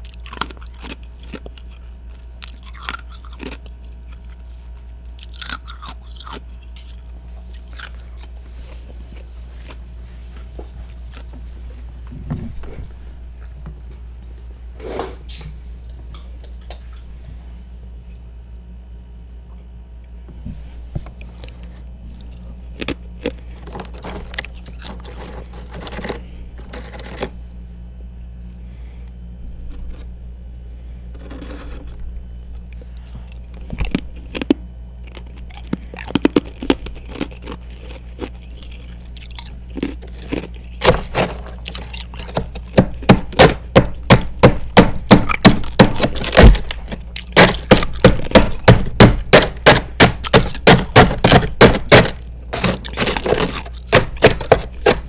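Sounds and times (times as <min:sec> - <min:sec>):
ice crunching while chewing: 0:00.0 - 0:09.9, 0:21.2 - 0:26.2, 0:31.1 - 0:32.0, 0:32.6 - 0:55.0
ice scraping: 0:31.2 - 0:32.0, 0:50.3 - 0:55.0.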